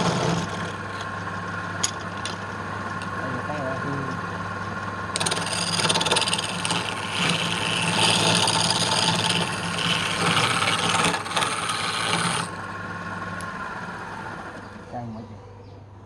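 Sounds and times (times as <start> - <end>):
tool sanding wood on lathe: 0.0 - 1.0, 5.2 - 12.6
lathe motor hum: 0.0 - 15.2.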